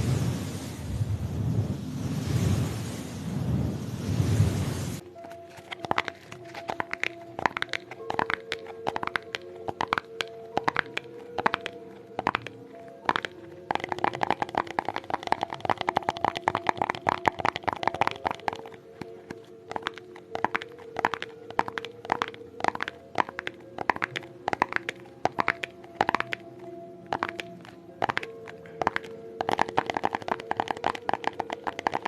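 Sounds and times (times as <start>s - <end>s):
crisp tapping: 5.0s - 32.0s.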